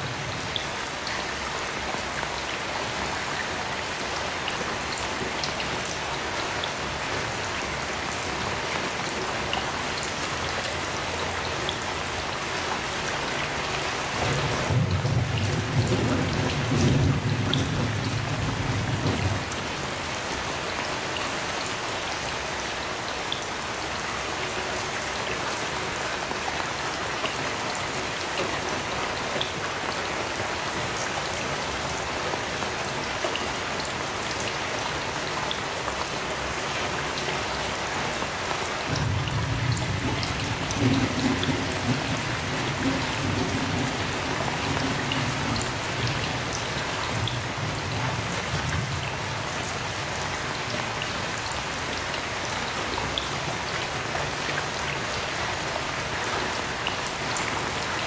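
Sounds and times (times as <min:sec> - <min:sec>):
heavy rain: 0:00.0 - 0:58.0
low thunder rumble: 0:14.4 - 0:19.7, 0:38.9 - 0:49.4.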